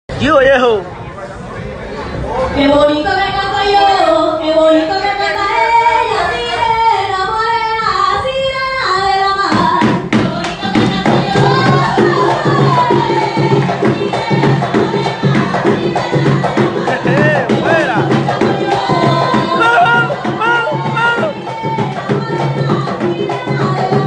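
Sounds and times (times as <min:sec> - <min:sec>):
woman singing: 0:02.6 - 0:24.0
hand drums beating: 0:09.5 - 0:24.0.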